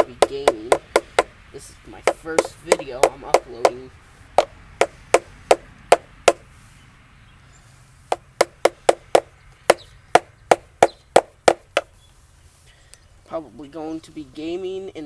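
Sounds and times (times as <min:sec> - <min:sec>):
mallet striking chisel into log: 0:00.0 - 0:01.4, 0:04.4 - 0:06.4, 0:08.1 - 0:11.9.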